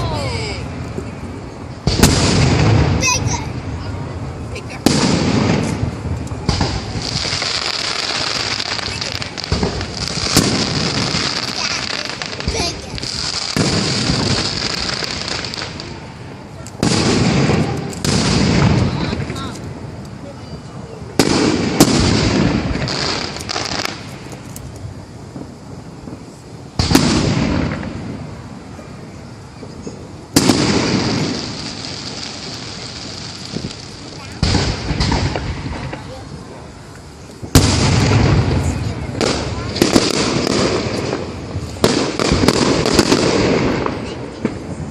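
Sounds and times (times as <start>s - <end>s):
fireworks booming: 0.0s - 44.9s
high hiss: 0.0s - 44.9s.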